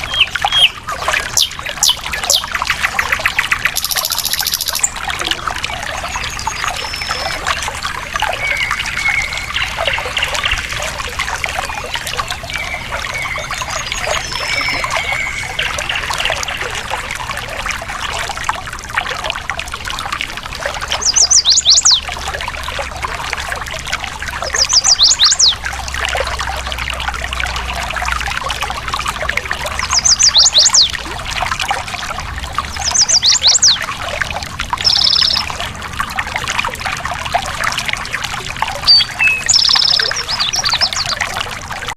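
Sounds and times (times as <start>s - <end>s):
birds singing: 0.0s - 16.9s, 20.8s - 22.2s, 24.4s - 25.7s, 29.7s - 31.0s, 32.6s - 33.9s, 34.8s - 35.6s, 38.7s - 41.3s
stream water trickling: 0.0s - 41.9s
bird high sweeping notes: 3.7s - 4.9s, 34.8s - 35.5s.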